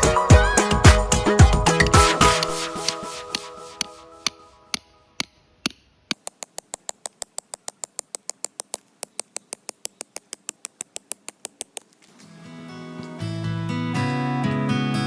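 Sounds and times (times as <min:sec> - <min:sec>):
rapid mechanical ticking: 0:04.7 - 0:12.0
acoustic guitar music: 0:12.3 - 0:15.0.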